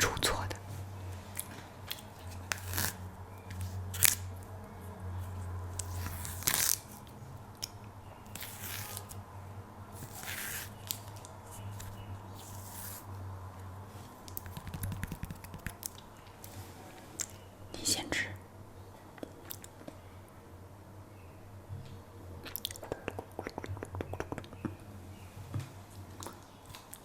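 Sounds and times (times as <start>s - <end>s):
banana peel ripping: 1.4s - 4.5s, 5.7s - 9.2s, 10.0s - 13.1s.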